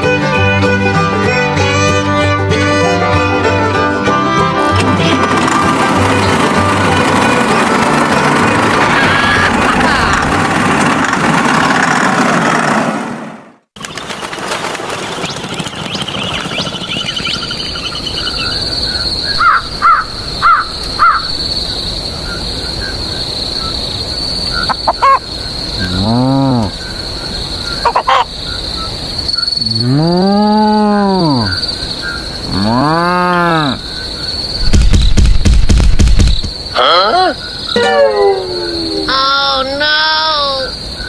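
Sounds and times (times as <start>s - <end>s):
loud low rumble: 5.0s - 12.5s, 19.3s - 22.3s
short bird calls: 16.0s - 23.0s
high insect whine: 16.9s - 41.0s
cattle mooing: 25.8s - 26.7s, 29.6s - 31.6s, 32.5s - 33.8s.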